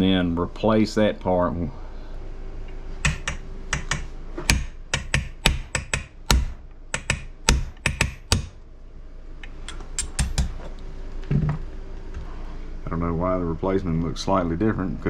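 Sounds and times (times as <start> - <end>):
hammer tapping a metal punch: 3.0 - 8.6, 9.7 - 10.6.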